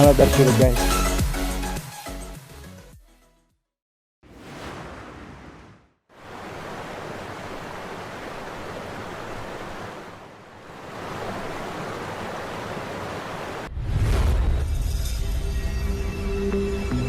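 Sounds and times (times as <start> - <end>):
waterfall rushing: 6.2 - 13.7.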